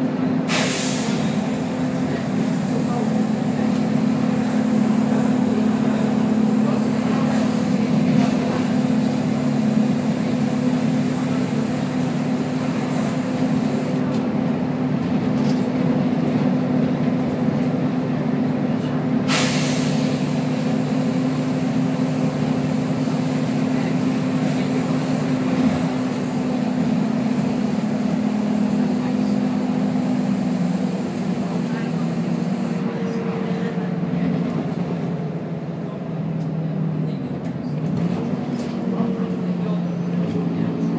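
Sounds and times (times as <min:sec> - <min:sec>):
bus diesel engine running: 0:00.0 - 0:40.9
air brake hiss: 0:00.5 - 0:02.6, 0:19.3 - 0:20.4.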